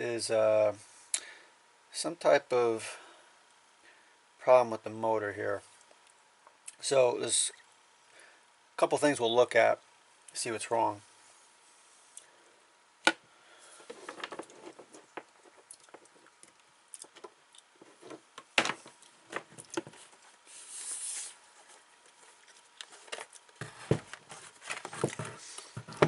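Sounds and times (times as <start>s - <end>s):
short hiss or scrape: 20.5s - 21.4s.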